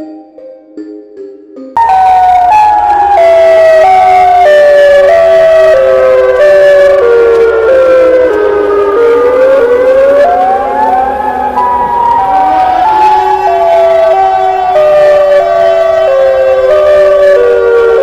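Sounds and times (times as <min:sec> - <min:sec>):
siren wailing: 0:01.8 - 0:18.0
steady held drone: 0:06.9 - 0:18.0.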